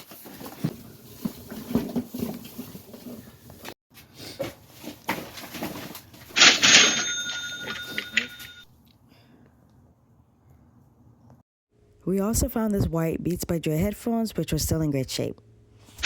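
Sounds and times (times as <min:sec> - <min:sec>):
loud bright bell ring: 0:06.4 - 0:08.6.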